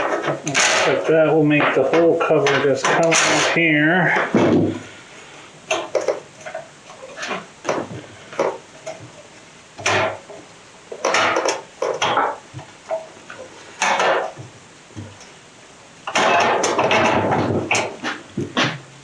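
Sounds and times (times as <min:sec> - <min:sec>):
hand tools clicking on sheet metal: 0:00.0 - 0:04.3, 0:09.8 - 0:15.4.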